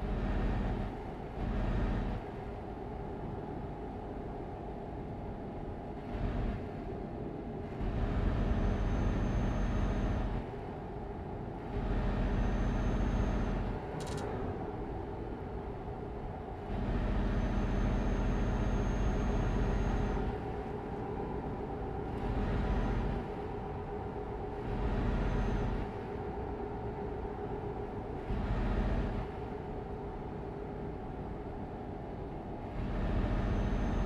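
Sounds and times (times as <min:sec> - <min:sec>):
vehicle engine rumble: 0:05.8 - 0:34.0
faint high whine: 0:08.0 - 0:10.4, 0:12.1 - 0:14.5, 0:16.7 - 0:28.1, 0:32.8 - 0:34.0
sharp click: 0:14.0 - 0:14.3.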